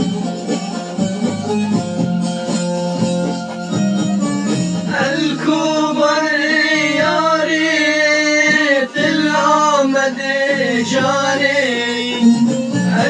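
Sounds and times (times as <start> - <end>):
sustained instrumental backing: 0.0 - 13.0
man singing: 4.9 - 13.0.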